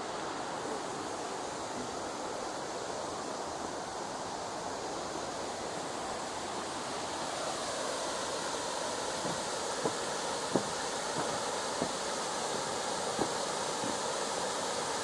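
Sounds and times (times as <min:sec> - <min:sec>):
mountain stream rushing: 0:00.0 - 0:15.0.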